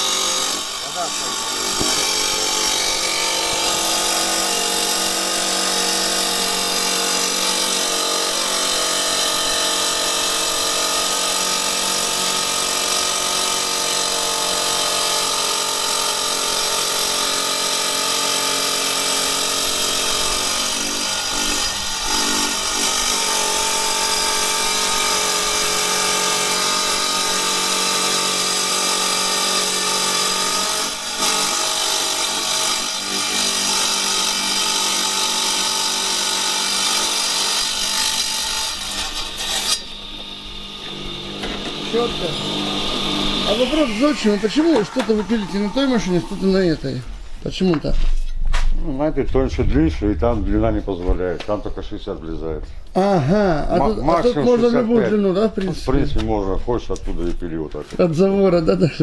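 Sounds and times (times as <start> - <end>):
wet tile saw whining: 0.0 - 47.1.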